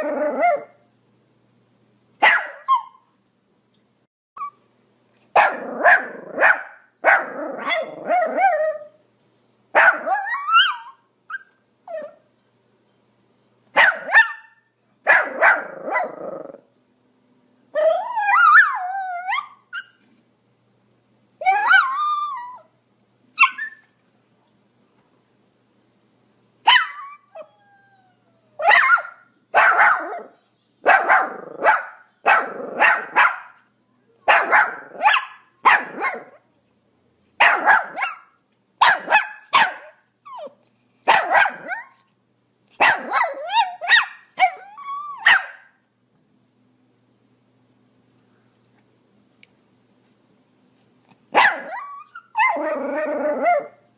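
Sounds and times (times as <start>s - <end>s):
small dog barking: 2.2s - 3.0s, 5.3s - 8.6s, 9.7s - 10.9s, 13.8s - 16.2s, 26.6s - 27.2s, 28.6s - 36.4s, 37.4s - 42.0s, 42.8s - 45.8s, 51.3s - 52.8s.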